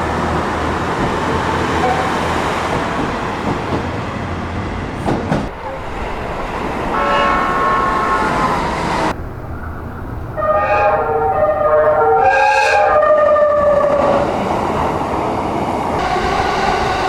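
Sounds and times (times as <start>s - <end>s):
train running noise: 0.0s - 17.0s
multi-tone horn: 6.9s - 8.8s, 10.4s - 13.7s
train horn chord: 6.9s - 8.8s, 10.4s - 13.5s.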